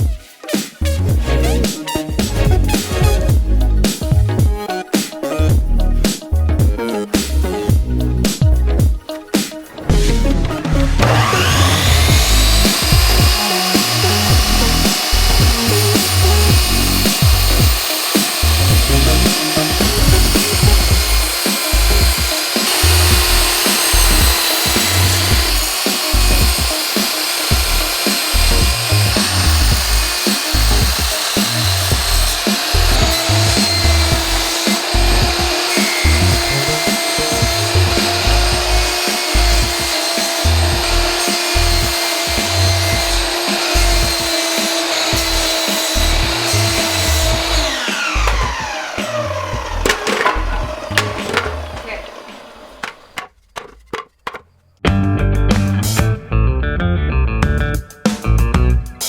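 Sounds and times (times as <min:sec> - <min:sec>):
bandsaw sawing through log: 0:09.8 - 0:53.2.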